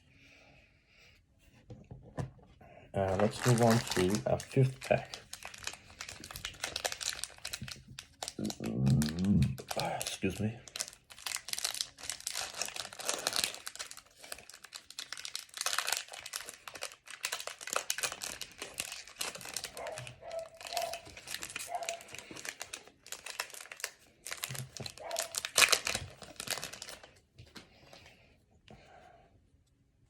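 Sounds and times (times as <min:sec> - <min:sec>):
foil wrapper crinkling and tearing: 0:03.0 - 0:27.2.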